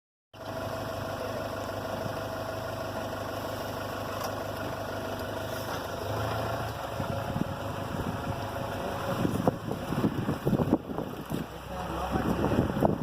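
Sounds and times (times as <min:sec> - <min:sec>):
car engine humming: 0:00.4 - 0:13.0
wind buffeting microphone: 0:06.8 - 0:13.0.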